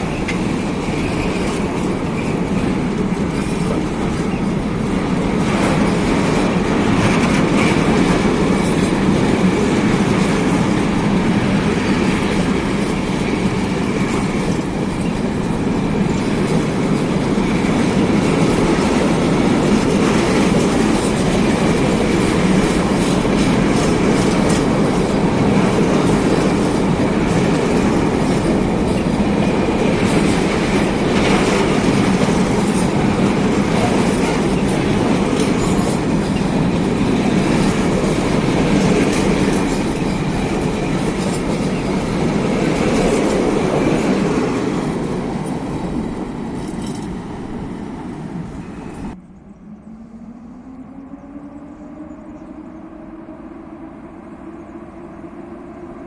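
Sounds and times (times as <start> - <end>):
freight train wheels rumbling: 0.0 - 56.0
faint rising tone: 49.2 - 56.0.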